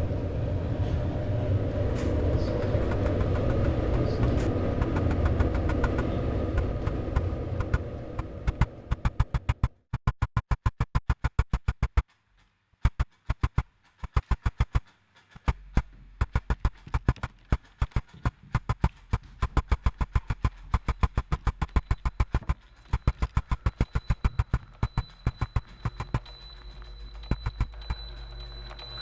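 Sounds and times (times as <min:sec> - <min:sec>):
low steady hum: 0:00.0 - 0:09.7, 0:15.5 - 0:29.0
rapid electronic clicks: 0:00.0 - 0:29.0
faint high steady tone: 0:20.9 - 0:29.0.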